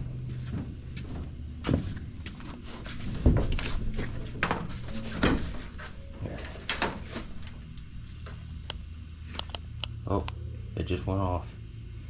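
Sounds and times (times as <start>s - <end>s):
clunks and knocks: 0.0s - 8.5s
steady low hum: 0.0s - 12.0s.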